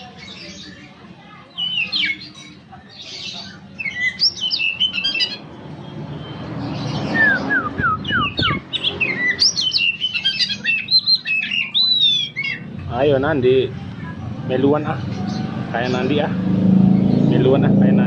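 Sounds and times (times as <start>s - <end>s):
bird singing whistles: 3.8s - 12.6s.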